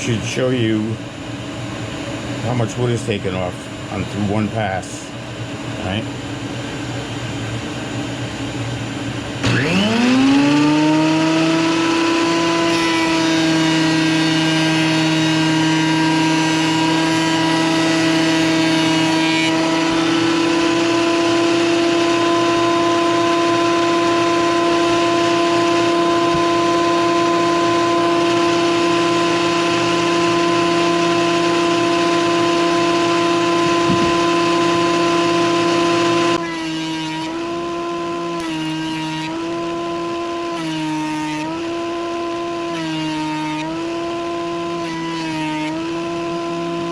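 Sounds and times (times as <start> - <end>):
thickness planer motor whine: 0.0 - 46.9.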